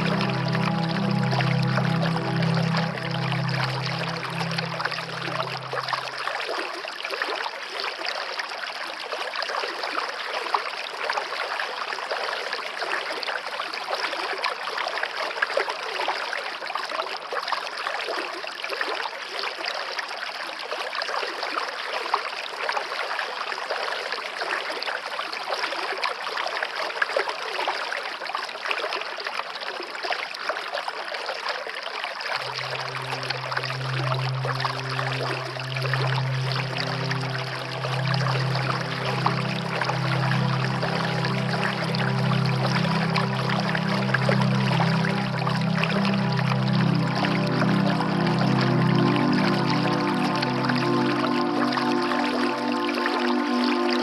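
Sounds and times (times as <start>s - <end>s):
low background music tones: 0.0s - 6.4s, 32.4s - 54.0s.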